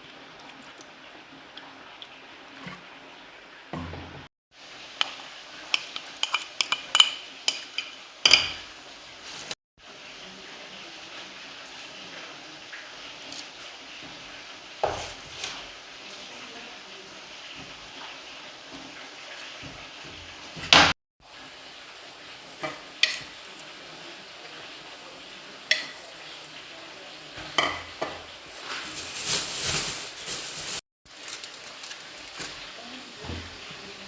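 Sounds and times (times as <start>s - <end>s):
food sizzling in a pan: 3.9s - 34.0s
metal spoon scraping a pan: 5.7s - 8.6s.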